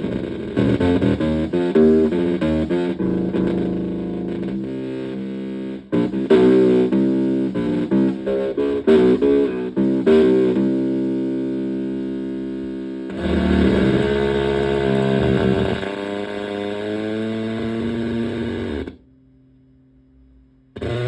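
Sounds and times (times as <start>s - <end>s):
robotic pitched synth notes: 0.0s - 11.4s, 13.1s - 16.0s.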